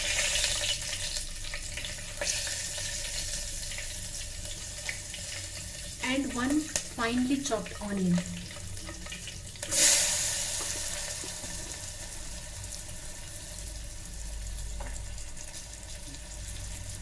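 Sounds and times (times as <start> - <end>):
onion sizzling in hot oil: 0.0 - 17.0.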